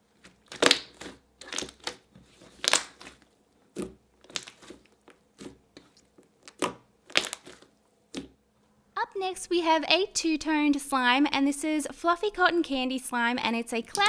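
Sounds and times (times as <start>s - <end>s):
slime squelching: 0.1s - 8.4s.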